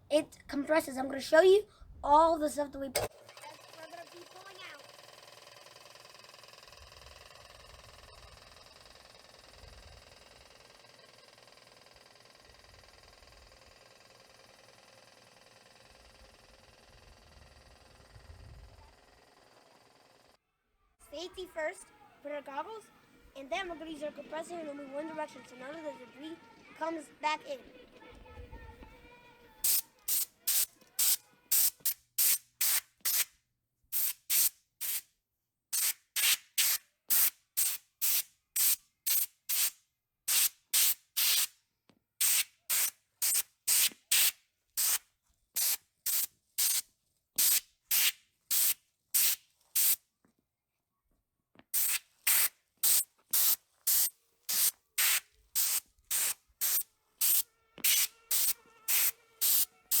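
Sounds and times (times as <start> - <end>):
compressed air blasts hissing: 29.6 - 33.3, 33.9 - 35.0, 35.8 - 41.5, 42.2 - 45.0, 45.6 - 46.8, 47.4 - 50.0, 51.8 - 60.0.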